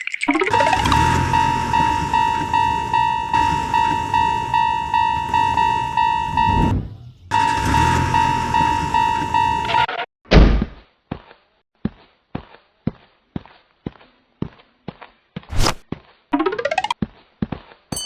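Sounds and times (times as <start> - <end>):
railroad crossing bell ringing: 0.5 - 6.7, 7.3 - 9.9
passing train rumble: 0.5 - 9.8.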